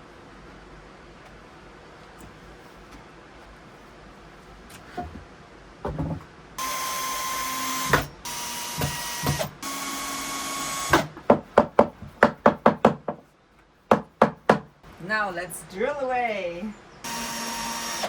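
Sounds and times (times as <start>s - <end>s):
power drill running: 6.6s - 11.1s, 17.0s - 18.0s
fast sharp knocks: 10.9s - 13.2s, 13.9s - 14.7s.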